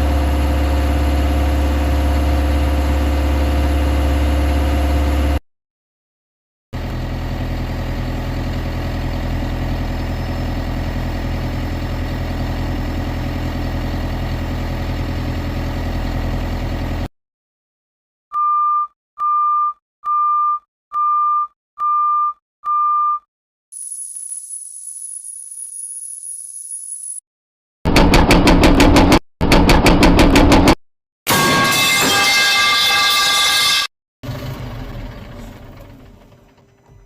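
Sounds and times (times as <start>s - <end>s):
diesel engine idling: 6.8s - 17.1s, 34.2s - 37.0s
back-up alarm beeps: 18.4s - 24.3s.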